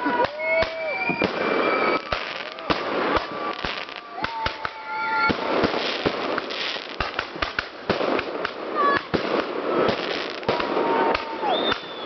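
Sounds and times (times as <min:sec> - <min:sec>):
firework whistle: 0:00.0 - 0:06.5, 0:09.7 - 0:12.0
fireworks bangs and crackling: 0:00.0 - 0:12.0.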